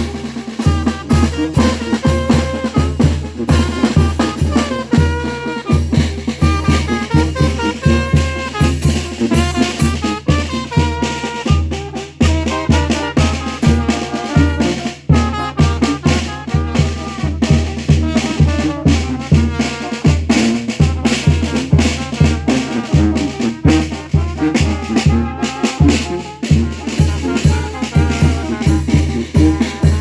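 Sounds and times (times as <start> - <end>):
bass drum and snare beat: 0.0 - 30.0
bouncing brass bass line: 0.0 - 30.0
held brass notes: 0.0 - 30.0.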